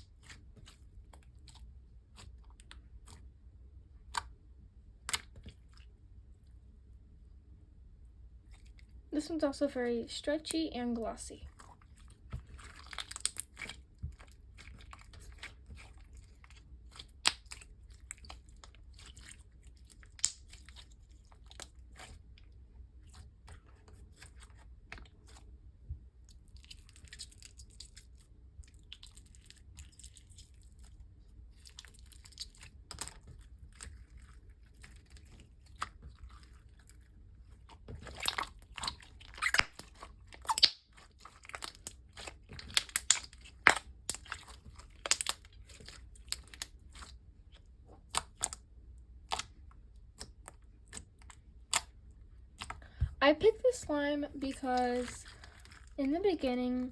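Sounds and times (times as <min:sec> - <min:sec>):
slime squishing: 0:00.0 - 0:07.5, 0:08.1 - 0:56.9
wet clicks and pops: 0:04.0 - 0:04.4, 0:05.0 - 0:05.6, 0:12.8 - 0:14.8, 0:16.9 - 0:18.7, 0:20.0 - 0:20.8, 0:38.0 - 0:47.2, 0:47.9 - 0:48.6, 0:49.2 - 0:52.0.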